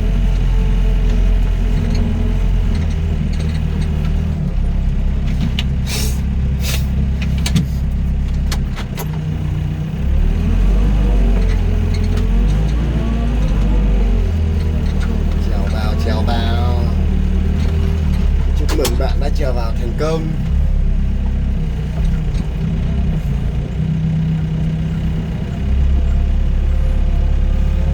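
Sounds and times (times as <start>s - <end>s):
excavator diesel engine running: 0.0s - 27.9s
short hisses: 5.8s - 7.0s
sharp clanks: 17.5s - 19.4s.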